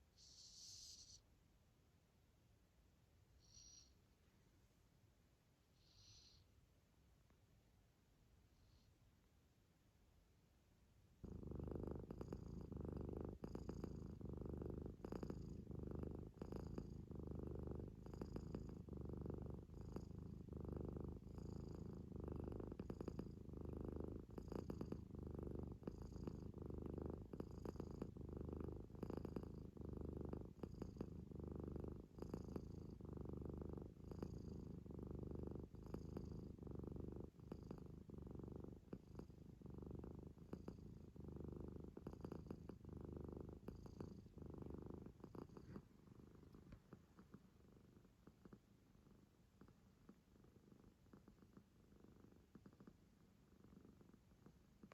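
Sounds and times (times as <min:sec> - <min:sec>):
kitten snoring and snorting: 0:00.0 - 0:01.2, 0:11.2 - 0:48.6.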